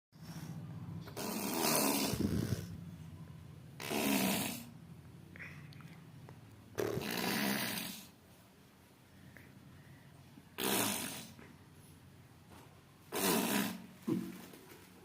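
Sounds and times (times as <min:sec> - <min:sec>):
baby blowing raspberries: 0:00.2 - 0:02.8, 0:03.8 - 0:04.8, 0:06.8 - 0:08.2, 0:10.6 - 0:11.4, 0:13.1 - 0:13.9.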